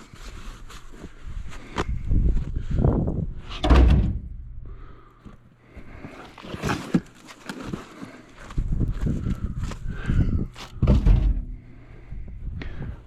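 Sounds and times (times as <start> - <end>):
heavy thumps in snow: 10.8 - 11.7.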